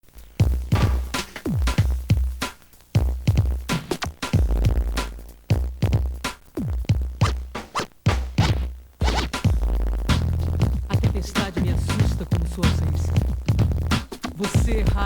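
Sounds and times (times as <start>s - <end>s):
pop song beat with pitch-dropping hits: 0.1s - 15.0s
deep bass: 9.5s - 15.0s.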